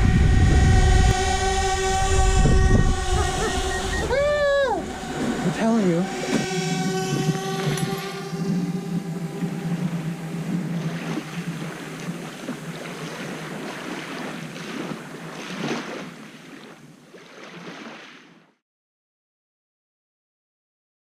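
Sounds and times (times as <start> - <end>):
drone propellers humming: 0.0 - 15.3
rushing wind and surf: 0.0 - 17.0.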